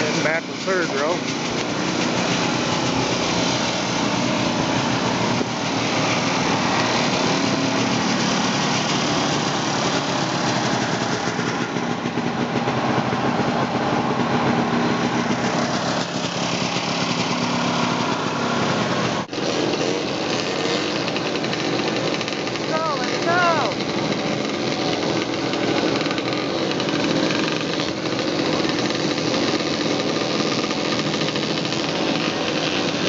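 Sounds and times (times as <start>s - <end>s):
snowmobile engines buzzing: 0.0s - 33.0s.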